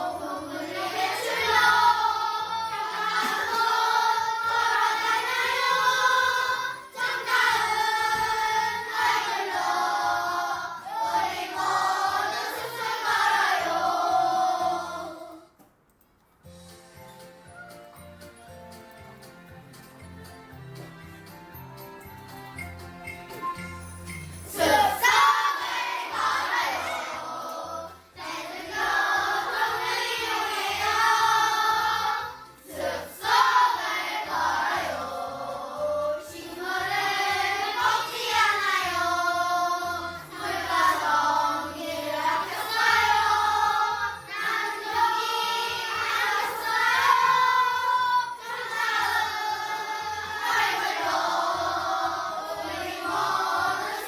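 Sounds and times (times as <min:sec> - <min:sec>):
children singing in unison: 0:00.0 - 0:15.6, 0:24.5 - 0:54.0
light instrumental accompaniment: 0:16.4 - 0:54.0.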